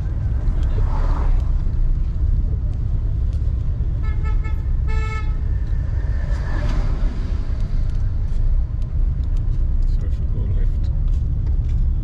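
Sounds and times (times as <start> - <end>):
car road and engine rumble: 0.0 - 12.0
vehicle horn beeps: 4.0 - 5.4.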